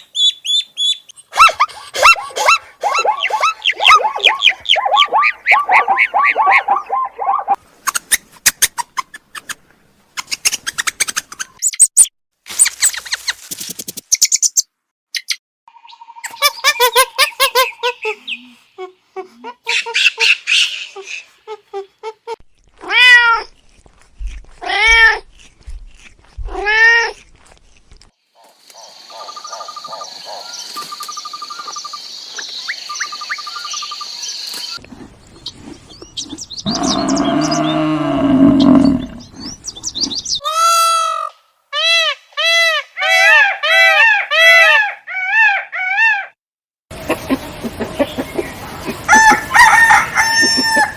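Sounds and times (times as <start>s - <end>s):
quick repeated animal cries: 40.4s - 46.4s.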